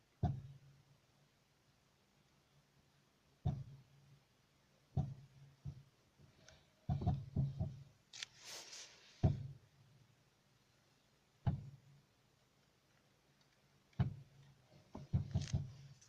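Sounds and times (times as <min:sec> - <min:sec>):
short rustling hiss: 0:08.1 - 0:09.2.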